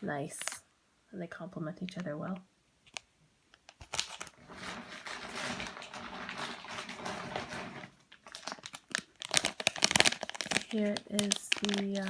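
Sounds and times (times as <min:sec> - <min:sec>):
plastic packaging rustling: 0:02.8 - 0:12.0.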